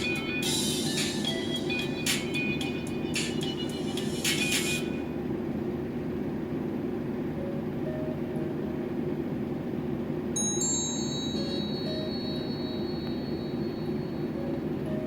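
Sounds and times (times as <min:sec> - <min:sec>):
high bell-like chime: 0:10.4 - 0:14.8.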